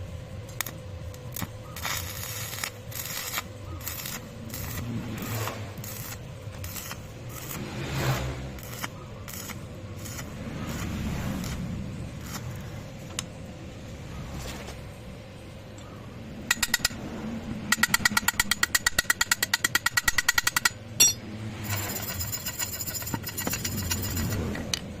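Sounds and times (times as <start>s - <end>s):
welding arc crackling: 0.0s - 13.3s
faint steady hum: 0.0s - 25.0s.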